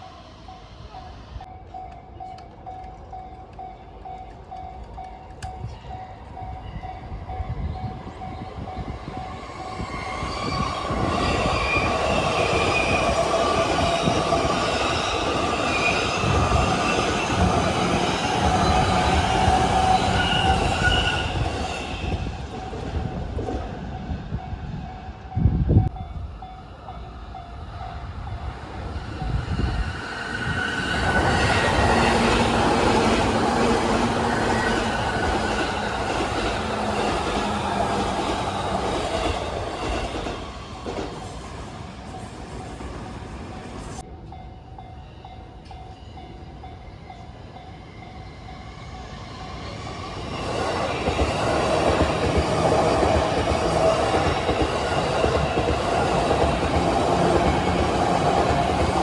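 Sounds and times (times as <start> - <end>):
electric train passing: 0.0 - 59.0
wheels clattering on rails: 49.6 - 59.0.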